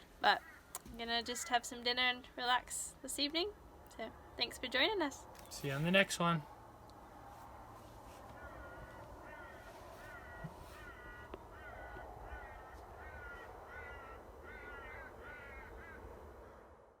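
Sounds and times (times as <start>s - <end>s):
crows cawing: 8.2s - 16.6s.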